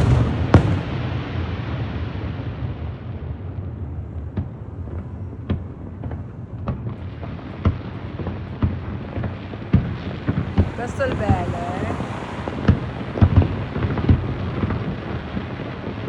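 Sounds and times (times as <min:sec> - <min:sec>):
sharp firework bangs: 0:00.0 - 0:02.9
fireworks rumbling bursts: 0:00.0 - 0:16.0.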